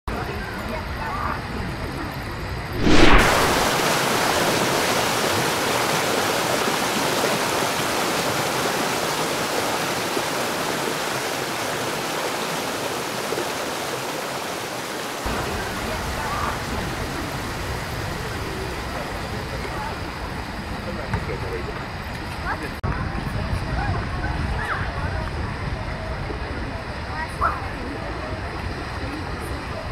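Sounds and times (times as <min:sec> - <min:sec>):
deep rumble: 0:02.7 - 0:04.4
waterfall rushing: 0:02.7 - 0:18.6.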